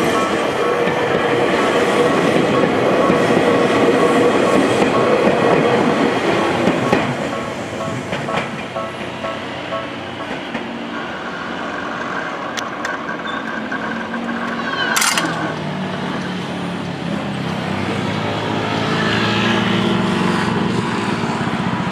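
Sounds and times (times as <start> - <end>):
steady high tone: 6.8 - 11.9.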